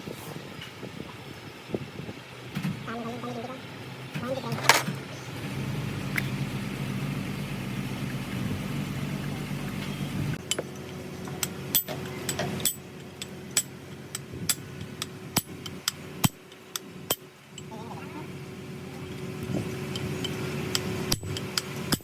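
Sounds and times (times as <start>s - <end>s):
low mechanical hum: 0.0s - 22.0s
metallic clinks of tools: 21.1s - 22.0s.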